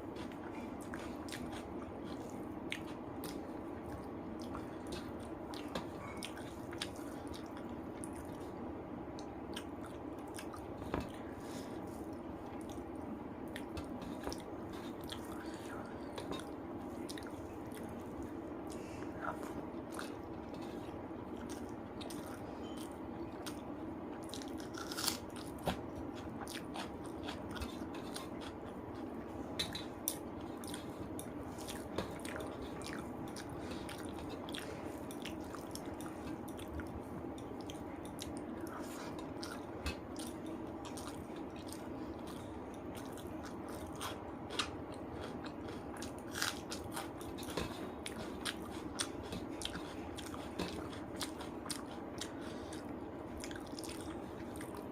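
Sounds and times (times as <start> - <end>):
person chewing food: 0.0 - 54.9
steady background hum: 0.0 - 54.9
crunch of food: 24.3 - 25.6.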